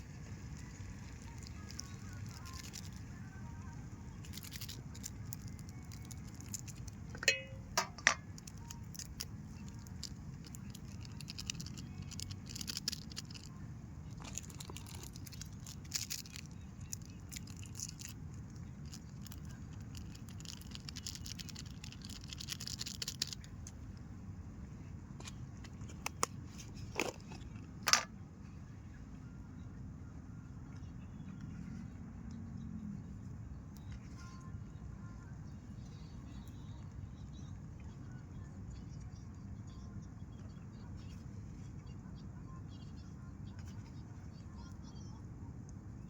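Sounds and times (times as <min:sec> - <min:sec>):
small clicks and rustles: 0:00.0 - 0:24.0
metal utensil clinking on pot: 0:07.1 - 0:08.3.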